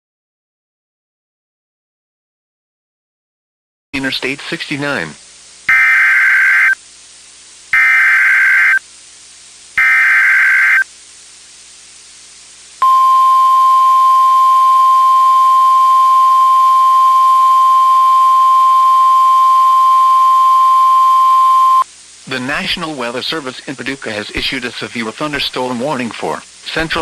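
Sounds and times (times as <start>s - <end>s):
buzzy digital data bursts: 5.7s - 6.8s, 7.7s - 8.8s, 9.8s - 10.9s
steady single-pitch attention tone: 12.8s - 21.8s.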